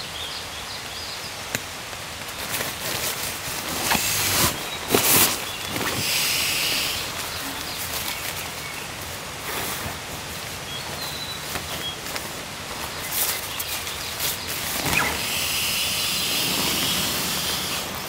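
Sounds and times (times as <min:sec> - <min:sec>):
forest ambience: 0:00.0 - 0:18.0
knocks and rustles of gear: 0:02.4 - 0:06.1.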